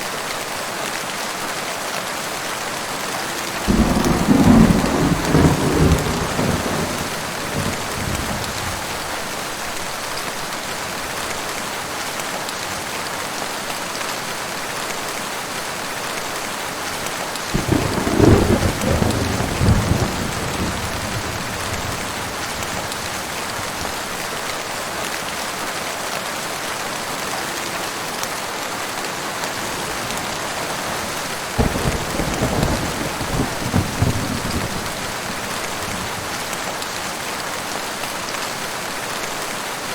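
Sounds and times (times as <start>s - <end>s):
heavy rain hissing: 2.5s - 11.3s, 16.7s - 39.9s
thunder rumbling: 3.4s - 9.1s, 17.5s - 24.2s, 29.6s - 36.6s.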